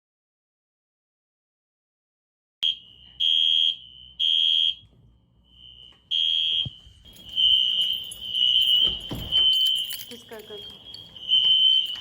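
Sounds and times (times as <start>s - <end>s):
faint alarm tone: 2.6s - 12.0s
fire alarm beeping: 2.6s - 12.0s.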